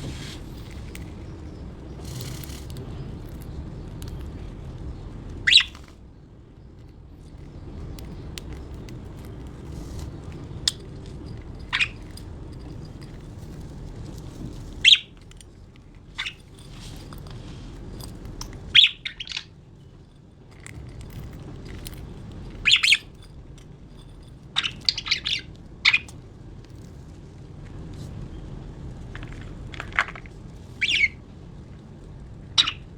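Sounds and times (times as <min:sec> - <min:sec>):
low background hum: 0:00.0 - 0:32.9
budgerigars chirping and squawking: 0:05.4 - 0:05.8, 0:11.7 - 0:12.0, 0:14.8 - 0:15.1, 0:16.2 - 0:16.4, 0:18.7 - 0:19.5, 0:22.6 - 0:23.1, 0:24.6 - 0:26.1, 0:30.8 - 0:31.2, 0:32.6 - 0:32.9.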